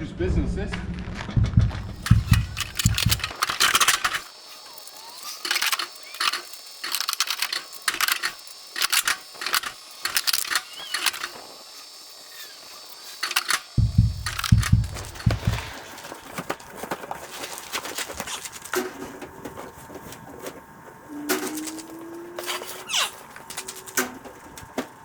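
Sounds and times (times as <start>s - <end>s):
objects being handled: 1.7s - 4.3s, 13.2s - 25.0s.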